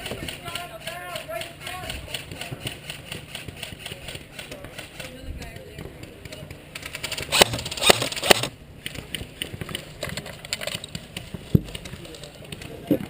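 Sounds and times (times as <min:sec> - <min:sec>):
airsoft guns firing: 0:00.0 - 0:05.2, 0:05.8 - 0:09.8.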